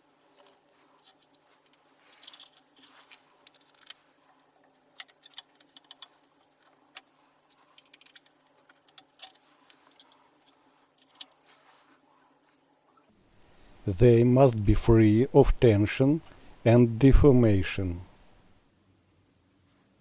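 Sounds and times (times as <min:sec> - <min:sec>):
faint steady hum: 0:00.0 - 0:20.0
small parts clicking: 0:00.4 - 0:11.4.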